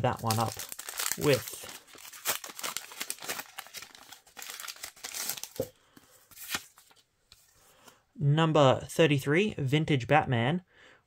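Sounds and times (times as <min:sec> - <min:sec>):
wrapper crinkling: 0:00.0 - 0:05.7.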